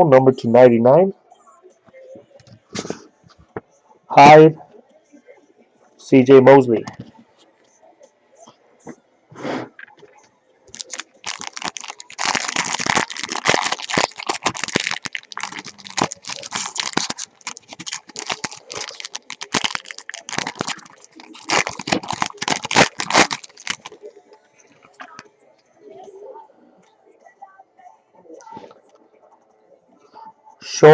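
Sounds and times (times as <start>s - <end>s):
foil wrappers tearing and crinkling: 10.7s - 24.0s.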